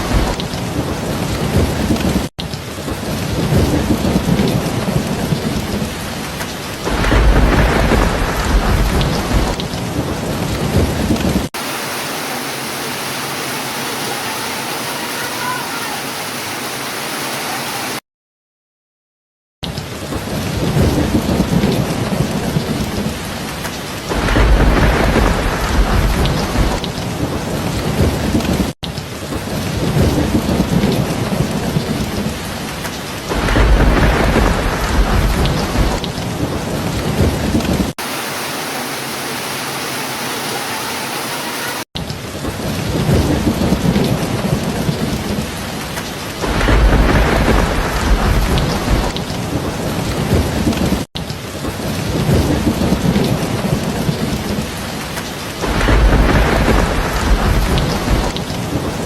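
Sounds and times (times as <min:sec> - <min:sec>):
thunder rumbling: 0:00.0 - 0:11.8, 0:19.8 - 0:38.2, 0:42.0 - 0:59.0
heavy rain: 0:00.0 - 0:18.0, 0:19.6 - 0:59.0.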